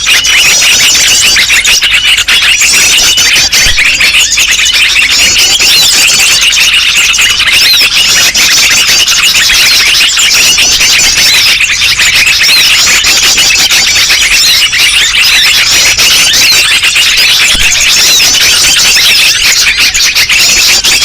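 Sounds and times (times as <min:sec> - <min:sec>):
chorus of small birds chirping: 0:00.0 - 0:21.0.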